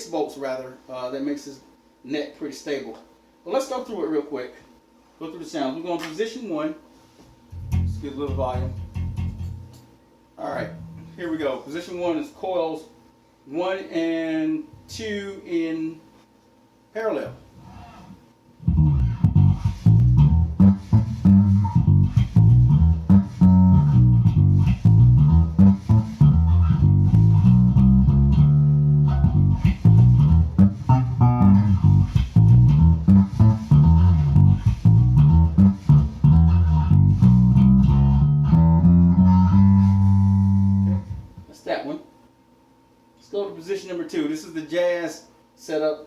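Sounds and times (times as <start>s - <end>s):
electric bass plucked notes: 7.5s - 9.8s, 10.6s - 11.2s, 18.6s - 41.5s.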